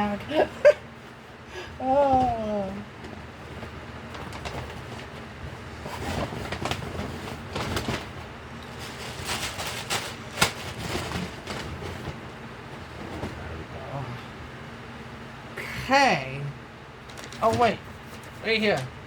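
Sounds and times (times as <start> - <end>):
bag and packaging crinkling: 8.7 - 11.8, 17.1 - 17.7.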